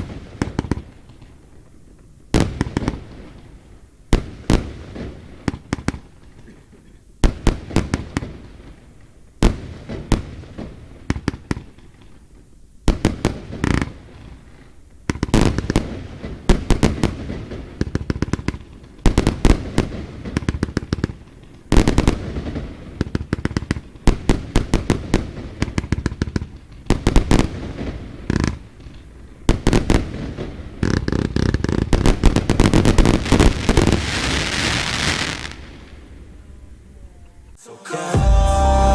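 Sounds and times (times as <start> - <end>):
firework crackle: 17.2 - 35.8.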